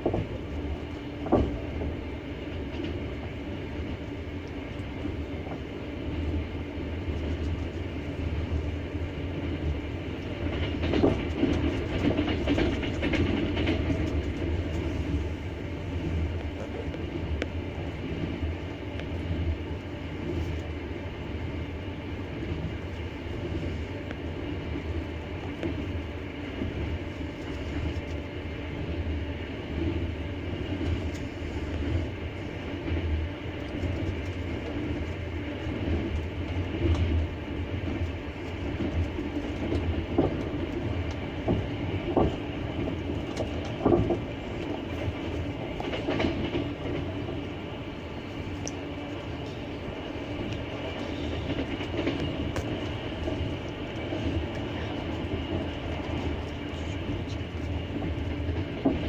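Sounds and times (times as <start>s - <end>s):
train wheels rumbling on track: 0.0s - 59.0s
wheels clacking over rail joints: 9.6s - 15.3s, 30.7s - 47.4s.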